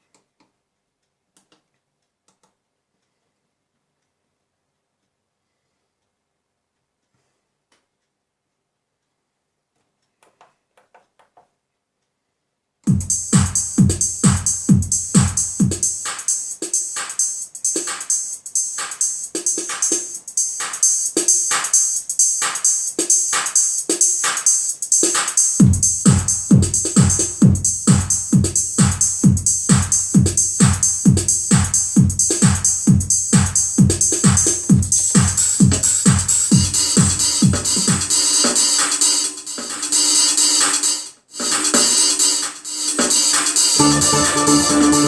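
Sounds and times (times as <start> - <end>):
keyboard drum rhythm pattern: 12.8 - 45.0
steady hi-hat: 12.8 - 45.0
low kick drum: 12.9 - 15.9, 25.6 - 37.6.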